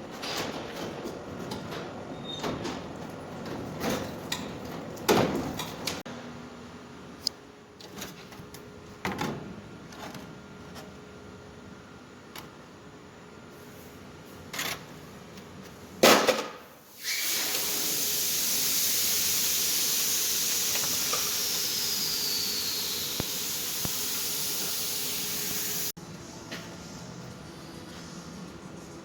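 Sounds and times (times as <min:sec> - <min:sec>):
loud high hiss: 0:16.9 - 0:25.9.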